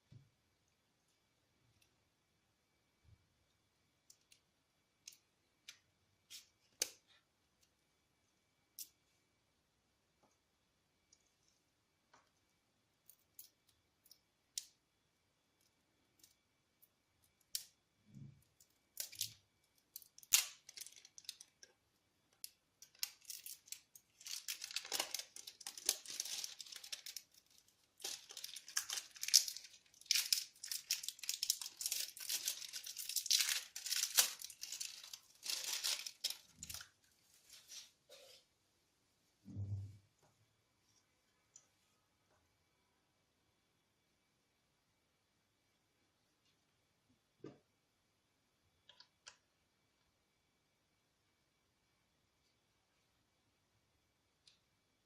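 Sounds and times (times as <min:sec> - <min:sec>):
packaging crinkling and tearing: 0:20.0 - 0:21.7, 0:22.8 - 0:37.8.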